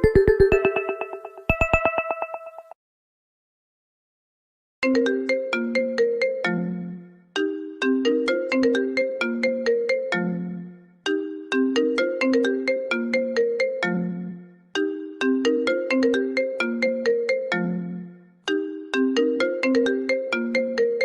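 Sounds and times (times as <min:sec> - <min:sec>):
phone ringtone melody: 0:00.0 - 0:02.8, 0:04.9 - 0:06.6, 0:07.6 - 0:10.3, 0:11.1 - 0:14.1, 0:15.2 - 0:17.8, 0:18.9 - 0:21.0.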